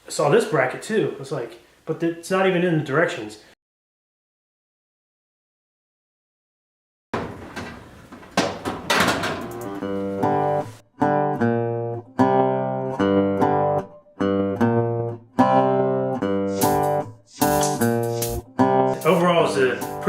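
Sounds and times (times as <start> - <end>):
acoustic guitar strumming chords: 9.2 - 20.0.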